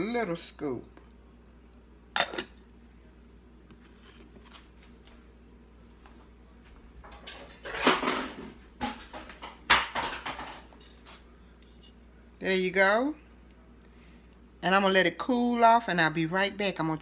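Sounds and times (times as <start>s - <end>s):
spoon clinking on dish: 2.2s - 2.6s.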